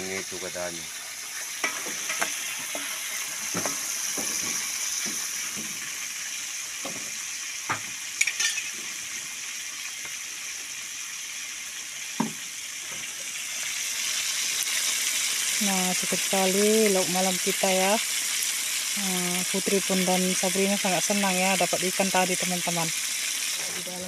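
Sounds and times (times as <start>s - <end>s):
fish sizzling in hot oil: 0.0s - 24.0s
utensil scraping a pan: 1.4s - 5.2s.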